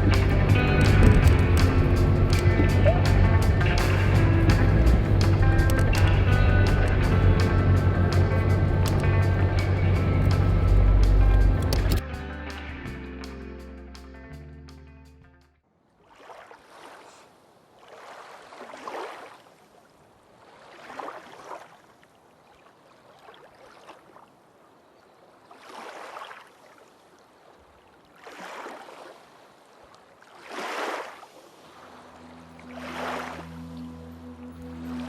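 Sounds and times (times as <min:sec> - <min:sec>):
small waves lapping on shore: 0:15.8 - 0:35.0.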